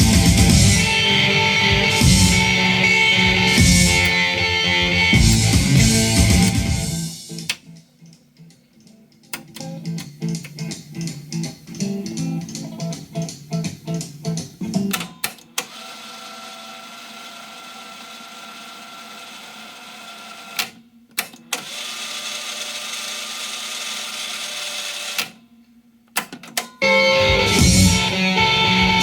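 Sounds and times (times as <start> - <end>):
music: 0.0 - 15.6, 25.8 - 29.0
tape winding whirr: 14.9 - 25.4.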